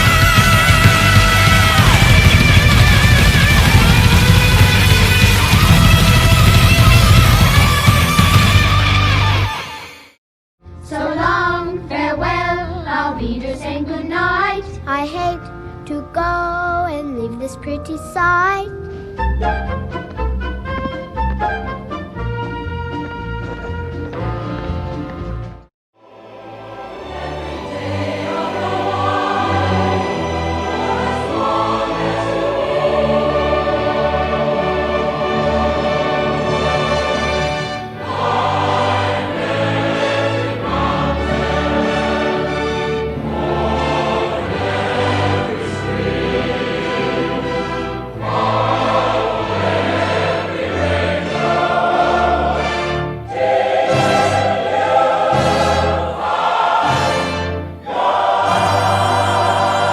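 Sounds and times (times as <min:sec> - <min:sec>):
choir singing long held notes: 0:00.0 - 0:10.0, 0:10.8 - 0:14.5, 0:26.0 - 0:59.9
orchestra: 0:00.0 - 0:10.2, 0:18.8 - 0:59.9.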